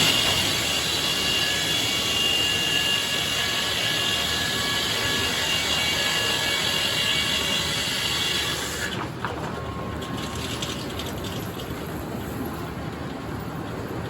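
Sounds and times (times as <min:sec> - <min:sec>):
band saw cutting log: 0:00.0 - 0:09.0.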